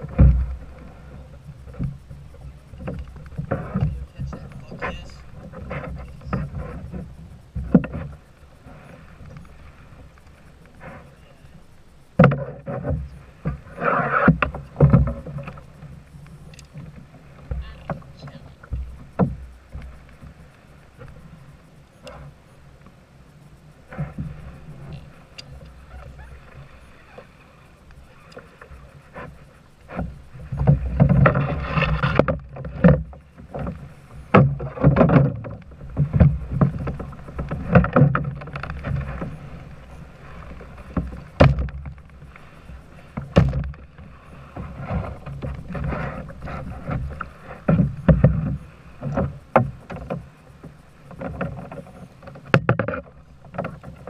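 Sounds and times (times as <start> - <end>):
water splashing and sloshing: 0.0 - 54.0
sharp knocks: 43.2 - 43.8.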